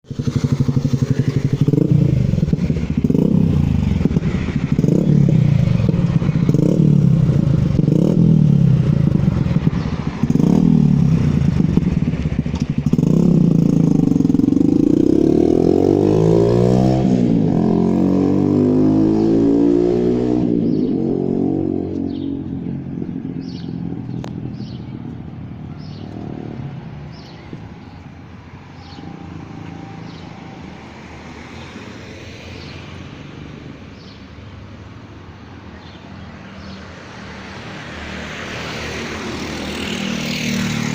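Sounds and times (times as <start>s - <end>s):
motorcycle engine revving: 0.0s - 31.6s, 36.6s - 40.9s.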